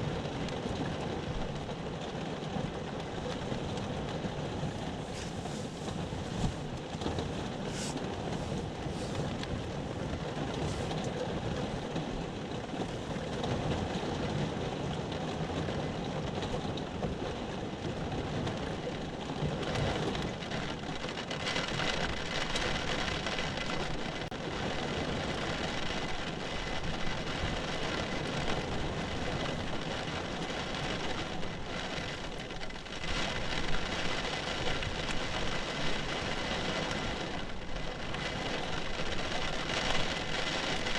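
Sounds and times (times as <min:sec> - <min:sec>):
heavy rain hiss: 0:04.6 - 0:06.8, 0:07.4 - 0:10.0.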